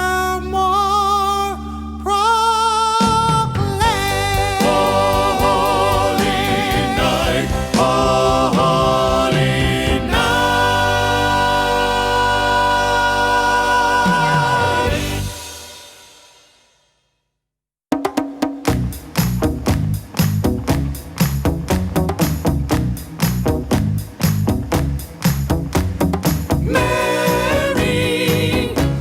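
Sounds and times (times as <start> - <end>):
song with singing voices: 0.0 - 16.4, 26.5 - 29.0.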